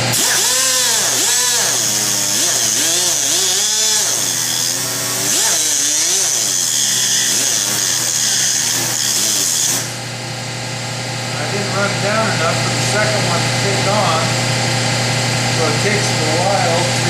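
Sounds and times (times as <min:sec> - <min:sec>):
angle grinder cutting steel: 0:00.0 - 0:10.0
air compressor humming: 0:00.0 - 0:17.0.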